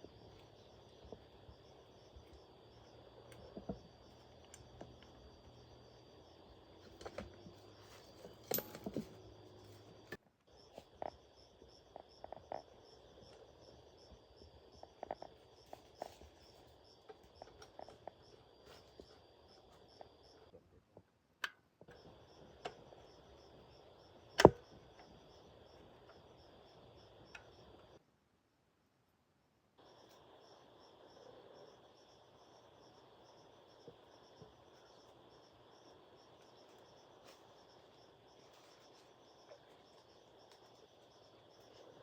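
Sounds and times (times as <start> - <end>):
insect chorus: 0.0 - 20.5, 21.8 - 28.0, 29.8 - 42.0
hand tools clicking and knocking: 8.2 - 9.1.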